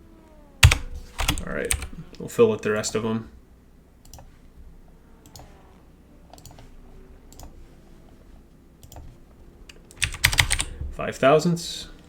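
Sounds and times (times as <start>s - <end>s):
low room hum: 0.0s - 12.0s
computer mouse clicking: 4.0s - 4.3s, 5.2s - 5.5s, 6.3s - 6.7s, 7.3s - 7.5s, 8.8s - 9.1s, 9.7s - 10.7s.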